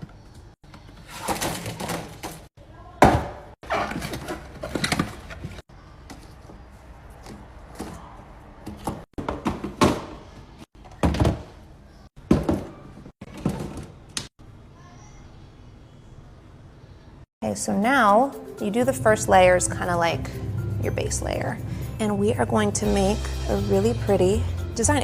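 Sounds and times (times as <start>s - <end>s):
containers knocking and thunking: 8.6s - 11.6s, 12.2s - 14.3s.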